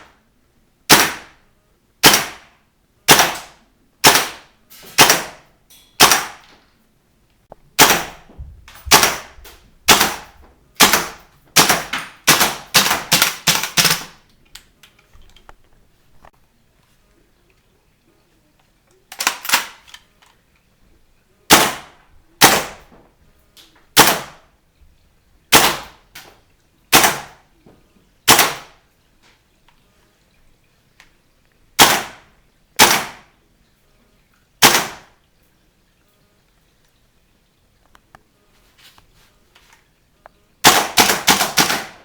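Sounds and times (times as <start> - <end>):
airsoft rifle shots: 0.9 - 1.4, 2.0 - 2.5, 3.1 - 6.5, 7.8 - 14.2, 21.5 - 22.9, 24.0 - 24.4, 25.5 - 26.0, 26.9 - 27.4, 28.3 - 28.8, 31.8 - 32.2, 32.8 - 33.3, 34.6 - 35.1, 40.6 - 42.0.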